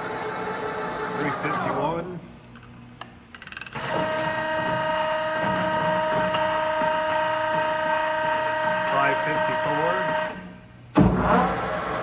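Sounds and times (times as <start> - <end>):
lathe running with gear whine: 0.0 - 2.0, 3.8 - 10.4.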